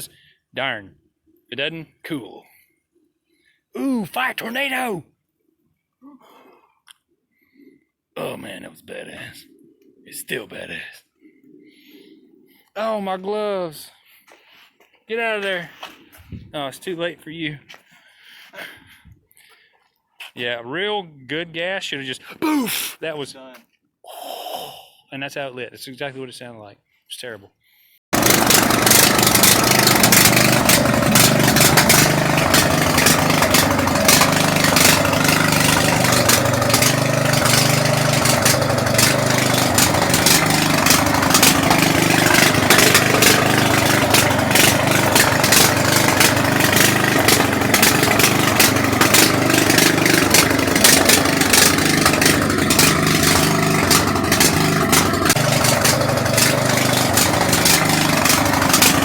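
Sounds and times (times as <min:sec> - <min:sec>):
riding mower engine running: 0:28.2 - 0:59.0
sharp clicks and rattles: 0:28.2 - 0:59.0.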